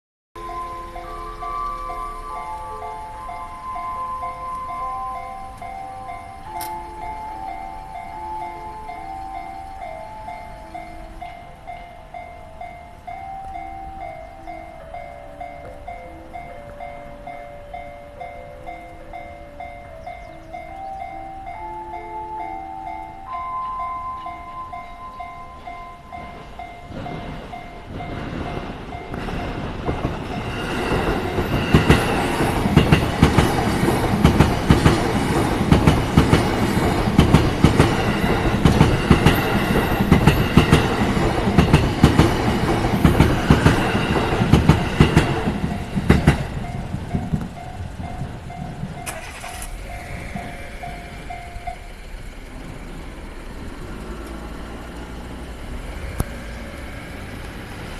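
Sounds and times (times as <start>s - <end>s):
level crossing warning bell: 0.4s - 57.9s
train wheels clacking on rail joints: 23.6s - 57.9s.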